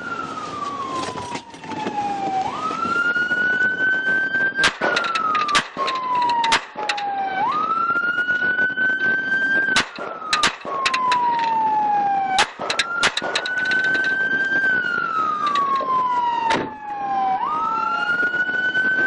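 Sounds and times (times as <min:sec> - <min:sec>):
police siren wailing: 0:00.0 - 0:19.0
sharp clicks or knocks: 0:04.6 - 0:07.6, 0:09.8 - 0:11.6, 0:12.4 - 0:14.2, 0:15.4 - 0:15.9.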